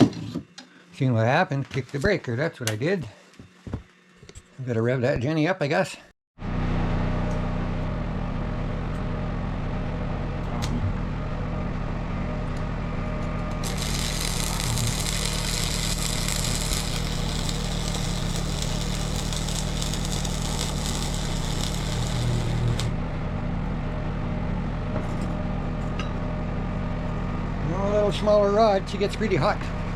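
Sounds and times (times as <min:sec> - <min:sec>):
welding arc sizzling: 0:13.6 - 0:23.0
generator running at high revs: 0:13.6 - 0:23.1.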